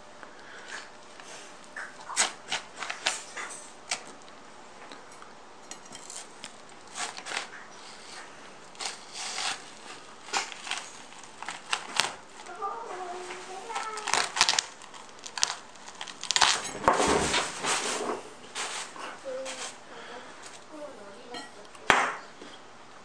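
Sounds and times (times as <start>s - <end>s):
watermelon rind cracking: 0.6s - 17.0s.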